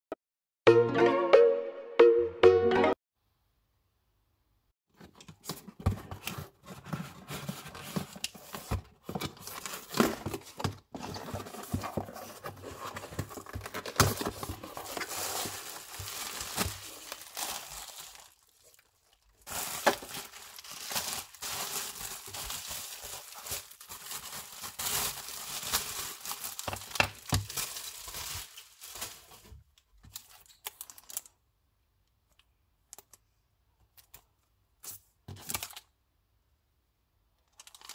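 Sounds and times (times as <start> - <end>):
packaging torn and crinkled: 12.6 - 29.5, 30.1 - 31.4, 37.5 - 37.9.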